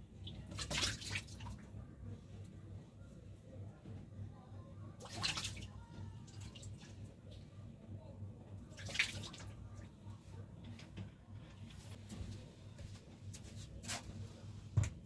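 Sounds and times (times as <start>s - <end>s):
water splashing: 0.5s - 1.6s, 5.0s - 5.6s, 8.8s - 9.4s.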